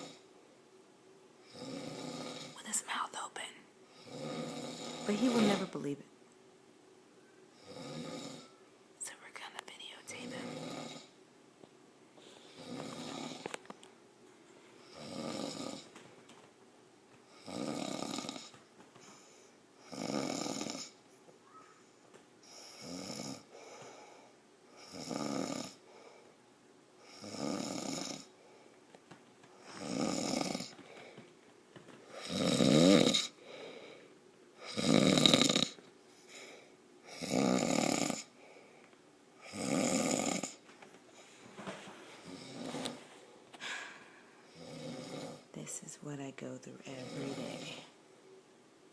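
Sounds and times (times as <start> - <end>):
man snoring loudly: 0.0 - 0.2, 1.4 - 2.6, 3.9 - 5.7, 7.6 - 8.5, 10.2 - 11.2, 12.5 - 13.5, 14.8 - 15.9, 17.3 - 18.5, 19.8 - 21.0, 22.5 - 23.5, 24.8 - 25.8, 27.0 - 28.3, 29.6 - 30.8, 32.1 - 33.4, 34.6 - 35.8, 37.1 - 38.3, 39.4 - 40.6, 42.2 - 42.9, 44.5 - 45.5, 47.0 - 47.9.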